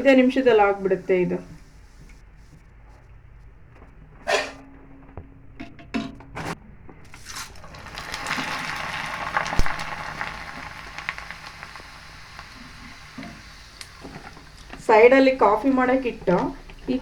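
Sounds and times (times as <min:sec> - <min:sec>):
hot oil sizzling: 0:07.1 - 0:17.0.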